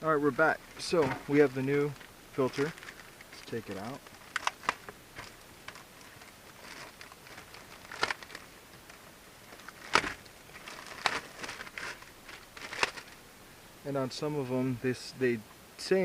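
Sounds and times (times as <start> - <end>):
packaging rustling: 0.4 - 13.2.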